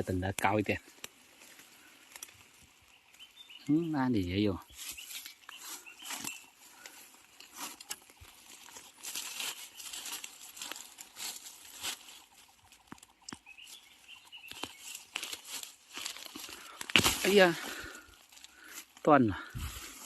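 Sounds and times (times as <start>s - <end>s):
dry leaves crackling and rustling: 0.0s - 20.0s
sharp twig snaps: 16.0s - 17.6s.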